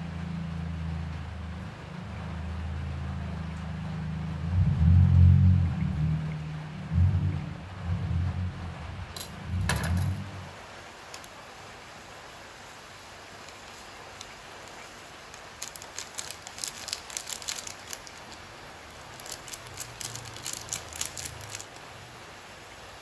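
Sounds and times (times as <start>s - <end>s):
steady soft hiss: 7.4s - 23.0s
light crackling and rustling: 9.1s - 11.8s, 12.6s - 22.0s.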